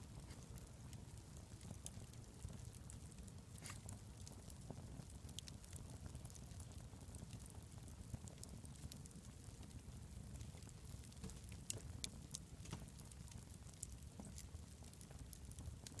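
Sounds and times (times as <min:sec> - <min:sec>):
campfire crackling and popping: 0:00.0 - 0:16.0.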